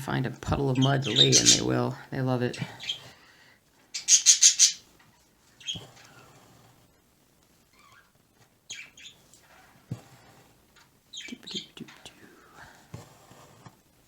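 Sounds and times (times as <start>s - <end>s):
pet birds chirping: 0.8s - 1.8s, 2.8s - 3.1s, 3.9s - 6.3s, 7.7s - 8.1s, 8.7s - 9.8s, 11.1s - 12.3s.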